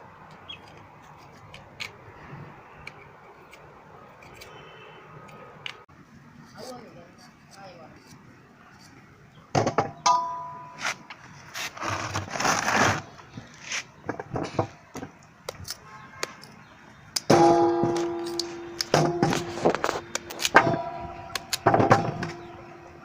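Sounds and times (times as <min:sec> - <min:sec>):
loud ringing clang: 0:10.1 - 0:10.8, 0:20.6 - 0:22.8
metal scraping: 0:17.3 - 0:23.0.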